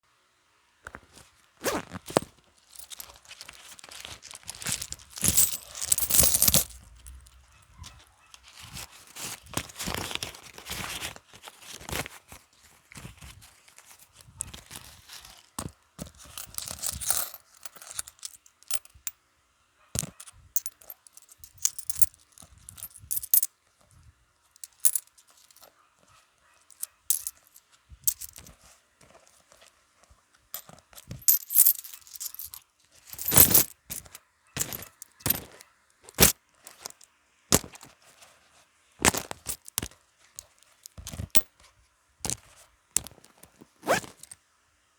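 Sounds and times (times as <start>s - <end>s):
banknotes rustling: 2.8s - 7.3s, 16.2s - 18.8s, 20.0s - 23.5s, 24.7s - 25.7s, 26.7s - 29.7s, 30.6s - 37.0s.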